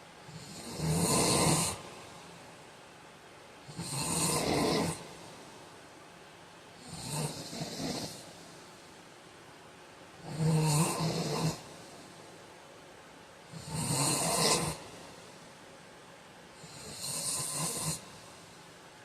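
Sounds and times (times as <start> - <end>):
man snoring: 0.3 - 1.8, 3.7 - 5.2, 6.8 - 8.3, 10.2 - 11.7, 13.5 - 15.0, 16.6 - 18.2.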